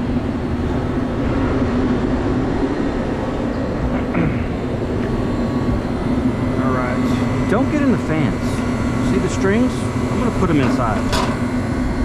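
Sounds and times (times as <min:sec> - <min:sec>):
condenser fan rushing: 0:00.0 - 0:12.0
constant low hum: 0:00.0 - 0:12.0.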